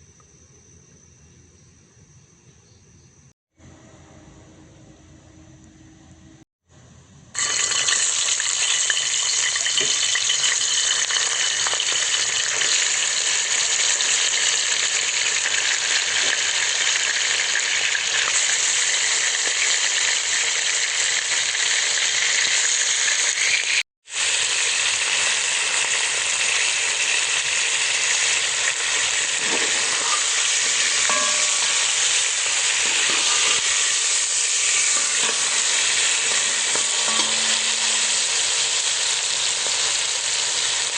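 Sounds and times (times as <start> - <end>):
food sizzling in hot pan: 7.4 - 40.9.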